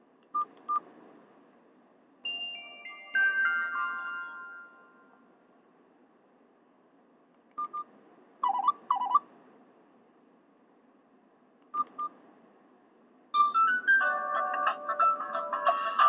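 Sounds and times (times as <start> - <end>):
phone ringtone: 2.3 - 5.2, 8.4 - 9.2, 13.4 - 16.0
phone key beeps: 7.6 - 9.2, 11.7 - 12.1.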